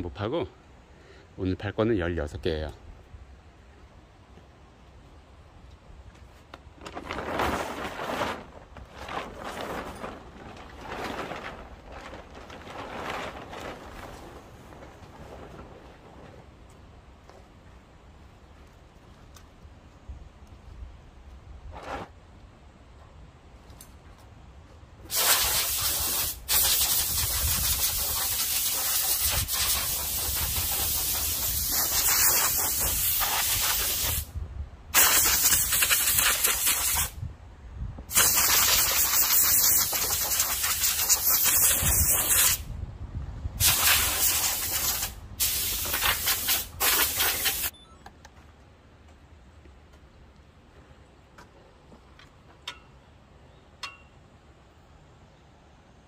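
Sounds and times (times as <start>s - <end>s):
compressed air hissing spray: 25.1s - 34.4s, 35.0s - 37.2s, 38.1s - 42.7s, 43.6s - 47.7s.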